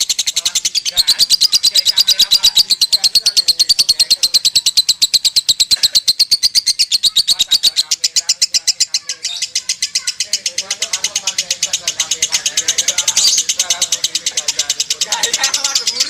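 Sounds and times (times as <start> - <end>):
lovebird chirping rapidly: 0.0 - 16.0.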